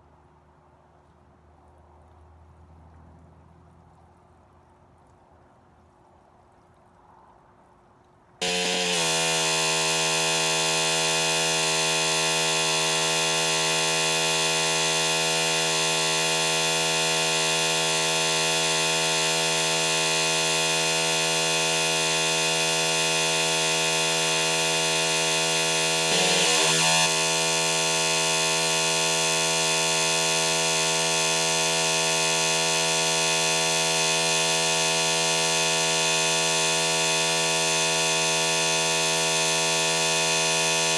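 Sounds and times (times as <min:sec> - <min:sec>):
pressure washer running: 0:08.4 - 0:40.9.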